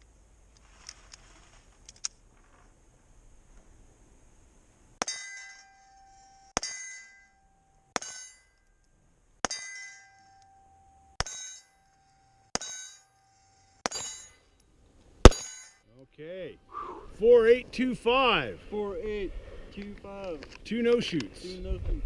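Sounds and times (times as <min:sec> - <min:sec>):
steel plate ringing: 0:05.0 - 0:08.6, 0:09.4 - 0:14.5, 0:15.2 - 0:15.8
pistol shots: 0:15.2 - 0:15.7.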